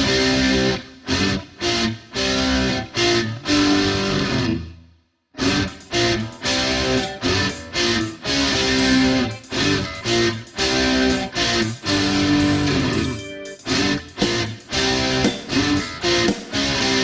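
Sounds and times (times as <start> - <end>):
rock music with electric guitar: 0.0 - 4.8, 5.4 - 17.0.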